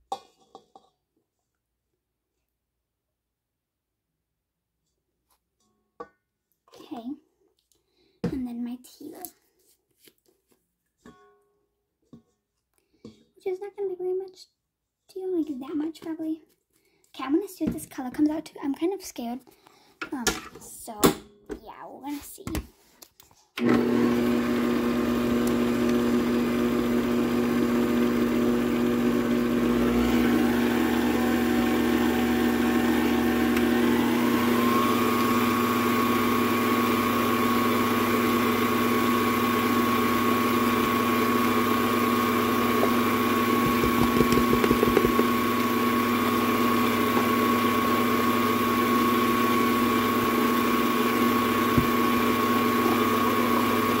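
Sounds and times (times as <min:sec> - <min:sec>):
electric mixer motor whining: 0:23.6 - 0:54.0.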